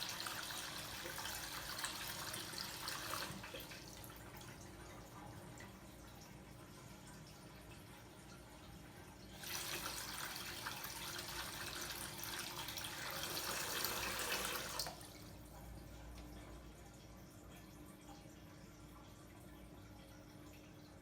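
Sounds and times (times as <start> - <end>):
running water from tap: 0.0 - 15.5.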